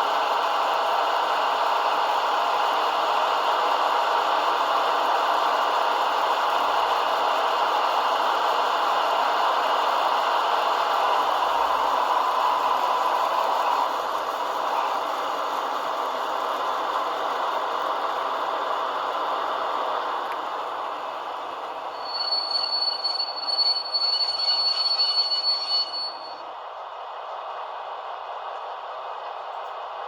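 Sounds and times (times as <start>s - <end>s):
model locomotive diesel engine: 0.0s - 30.0s
high brake squeal: 21.7s - 26.4s.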